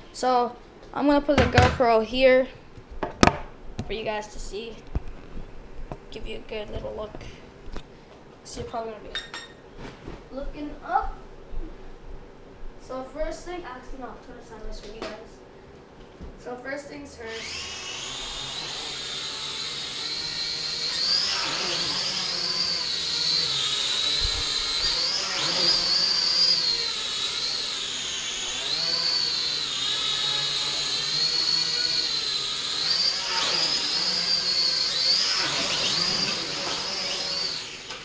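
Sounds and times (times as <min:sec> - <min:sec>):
drone propellers whining: 0:17.2 - 0:38.0.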